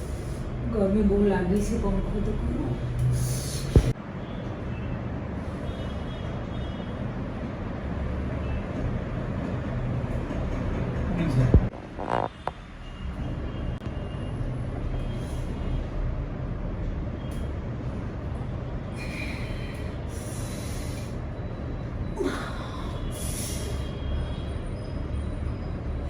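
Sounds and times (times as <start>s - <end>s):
breathy hisses: 19.0s - 21.2s, 22.2s - 23.9s.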